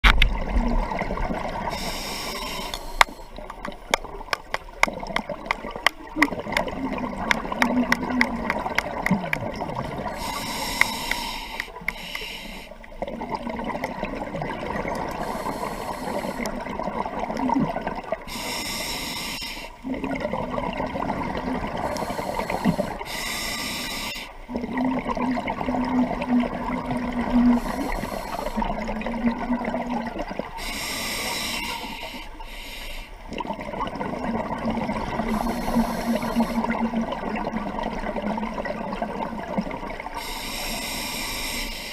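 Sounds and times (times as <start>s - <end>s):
exhaled bubbles gurgling: 0.0s - 18.6s, 19.7s - 23.2s, 24.0s - 32.4s, 33.2s - 41.2s
diver inhaling through regulator: 1.7s - 3.3s, 10.1s - 12.8s, 15.2s - 16.5s, 18.3s - 19.8s, 21.9s - 24.4s, 27.5s - 28.8s, 30.6s - 33.2s, 35.2s - 36.8s, 40.2s - 41.9s.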